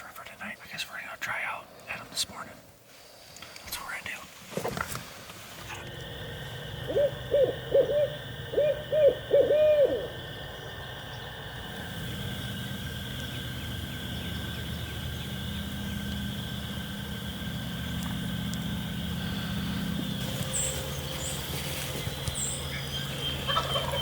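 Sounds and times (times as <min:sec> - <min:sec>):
owl hooting: 0:05.7 - 0:24.0.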